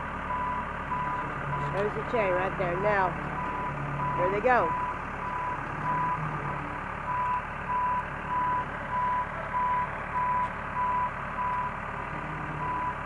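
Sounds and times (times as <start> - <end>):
diesel engine running: 0.0 - 13.0
reversing alarm beeping: 0.3 - 1.7, 2.8 - 6.2, 7.1 - 11.8, 12.6 - 13.0.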